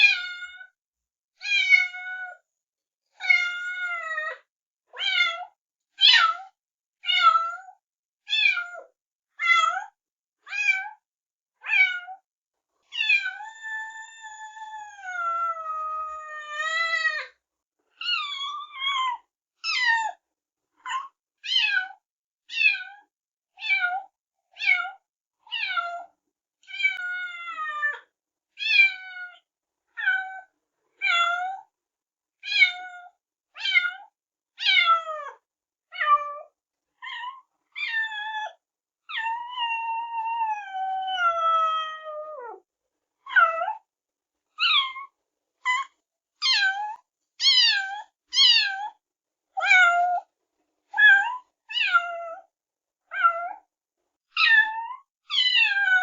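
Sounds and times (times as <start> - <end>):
kitten meowing: 45.7 - 48.9, 54.4 - 56.0.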